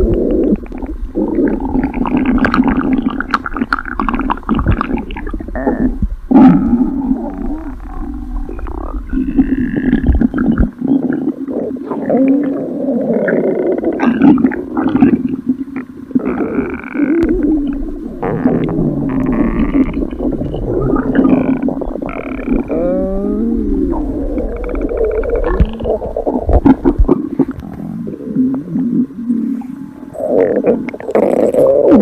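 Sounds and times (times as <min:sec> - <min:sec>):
stomach growling: 0:00.0 - 0:32.0.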